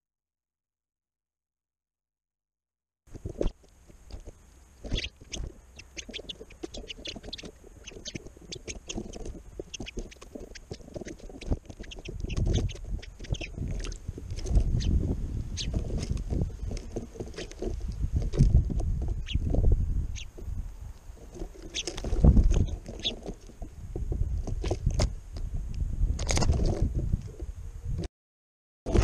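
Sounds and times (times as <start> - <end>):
low rustling and thumps: 3.1 - 25.2
sparrows chirping: 4.8 - 17.6, 19.2 - 20.4, 21.6 - 23.4.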